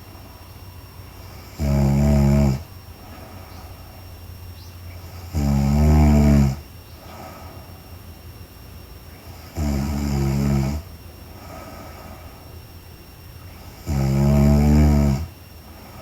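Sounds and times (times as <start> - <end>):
quiet breathing: 0.0 - 8.2, 10.3 - 16.0
woman snoring: 1.2 - 3.8, 5.1 - 7.6, 9.4 - 12.4, 13.6 - 15.3.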